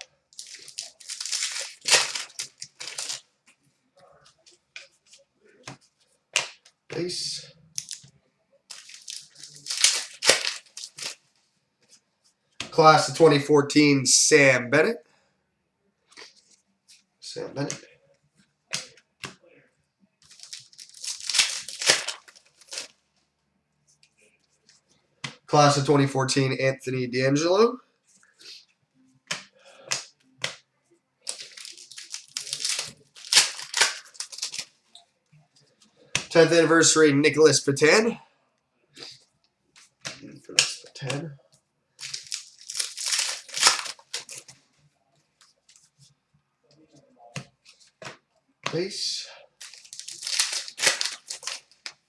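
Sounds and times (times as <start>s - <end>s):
plastic packaging crinkling: 0.3s - 3.2s, 8.7s - 11.2s, 20.2s - 22.9s, 31.3s - 34.7s, 42.0s - 44.5s, 49.6s - 52.0s.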